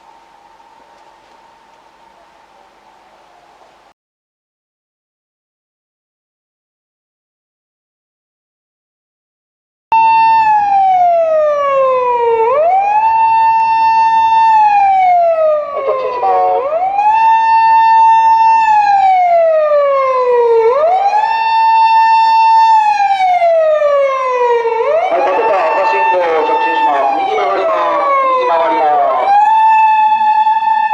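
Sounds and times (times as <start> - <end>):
police siren wailing: 0.0 - 3.9, 9.9 - 30.9.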